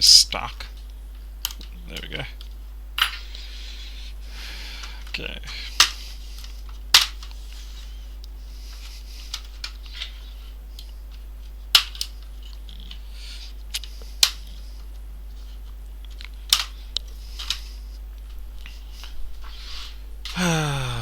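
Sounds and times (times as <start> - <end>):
laptop parts clicking and tapping: 5.8 - 7.4, 8.2 - 13.0, 13.7 - 15.0, 15.6 - 17.6.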